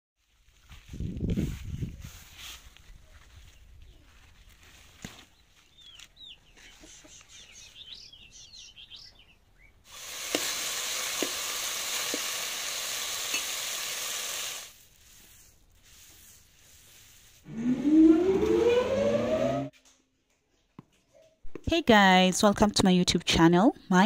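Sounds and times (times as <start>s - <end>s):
food sizzling in a pan: 9.9s - 14.8s.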